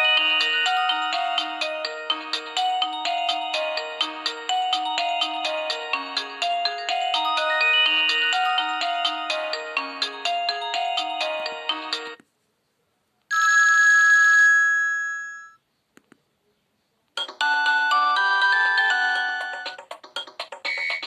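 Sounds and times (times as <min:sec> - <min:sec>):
polyphonic ringtone melody: 0:00.0 - 0:12.2, 0:17.2 - 0:21.0.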